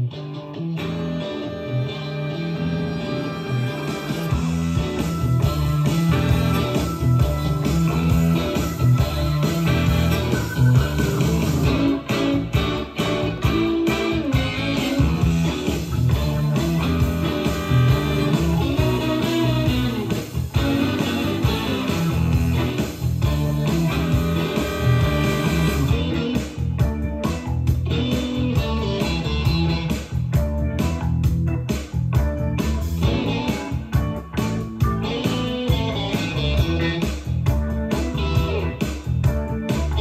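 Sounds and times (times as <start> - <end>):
guitar music from cassette: 0.0 - 40.0
steady bass line: 0.0 - 40.0.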